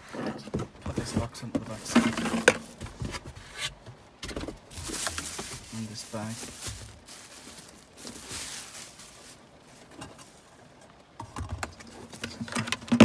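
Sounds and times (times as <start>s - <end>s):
plastic bag rustling: 0.6s - 3.7s, 4.4s - 10.7s.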